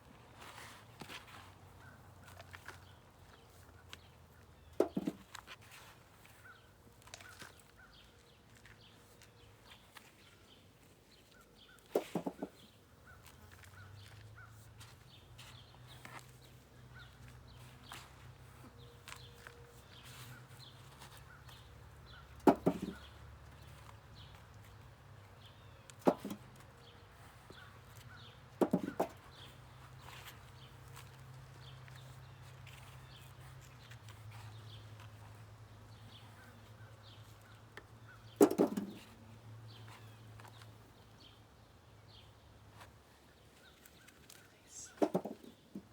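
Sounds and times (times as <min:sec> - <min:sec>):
potatoes knocking into container: 0:04.8 - 0:05.4, 0:11.9 - 0:12.6, 0:22.4 - 0:23.1, 0:26.0 - 0:26.4, 0:28.6 - 0:29.2, 0:38.4 - 0:39.0, 0:45.0 - 0:45.9.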